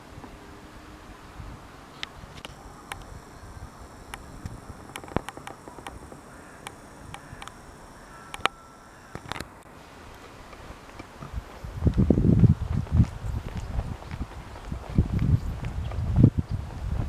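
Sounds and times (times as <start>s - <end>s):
high-pitched drone: 2.4s - 9.6s
light clicks: 4.0s - 7.6s.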